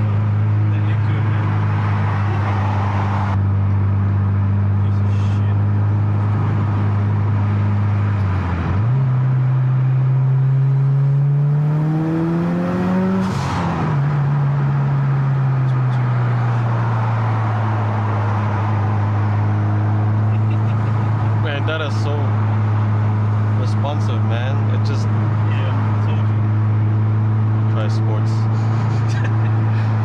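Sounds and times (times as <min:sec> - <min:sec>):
car engine revving: 0:00.0 - 0:30.0.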